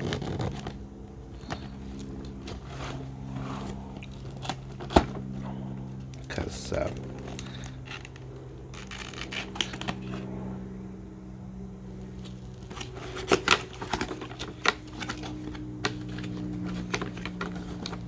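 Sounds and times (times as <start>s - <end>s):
cardboard box rustling and scraping: 0.0s - 10.3s, 12.1s - 18.0s
steady low hum: 0.0s - 18.0s.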